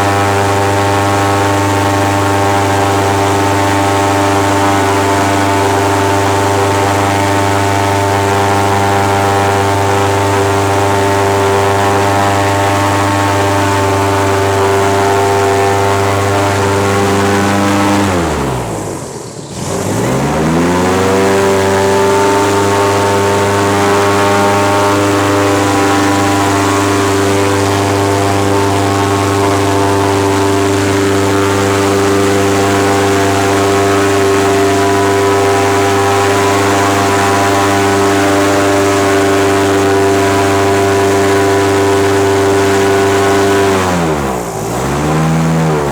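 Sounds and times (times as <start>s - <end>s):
airboat engine and propeller: 0.0s - 45.9s.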